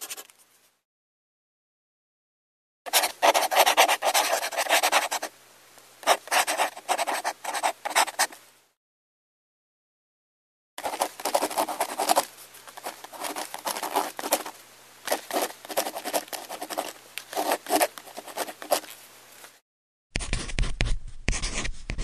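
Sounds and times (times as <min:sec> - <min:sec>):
pen scratching on paper: 0:00.0 - 0:00.3, 0:02.9 - 0:05.3, 0:06.0 - 0:08.4, 0:10.8 - 0:14.5, 0:15.1 - 0:18.9, 0:20.2 - 0:22.0.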